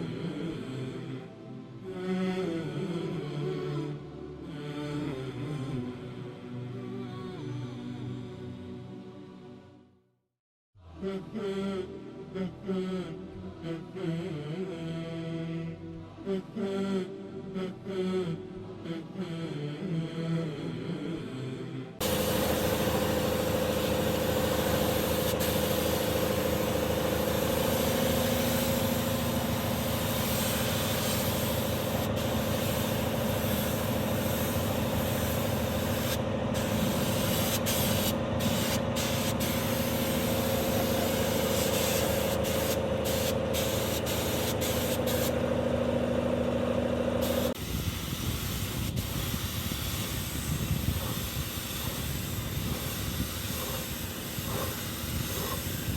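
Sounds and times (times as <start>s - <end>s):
spray gun air hiss: 22.0s - 45.4s, 47.2s - 55.9s
motor humming: 22.0s - 47.6s.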